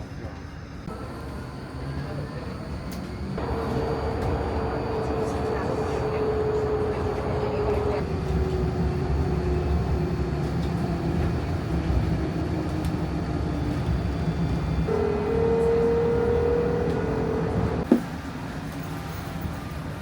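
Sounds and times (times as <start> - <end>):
rail vehicle rumble: 0.0 - 20.0
electric whine: 3.4 - 8.0.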